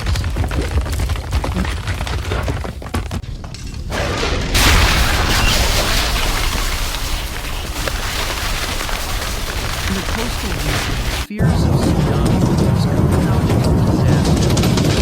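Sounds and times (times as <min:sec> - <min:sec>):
clattering and cracking: 0:00.0 - 0:15.0
deep continuous rumbling: 0:00.0 - 0:15.0
loud rushing crashing noise: 0:03.8 - 0:11.3.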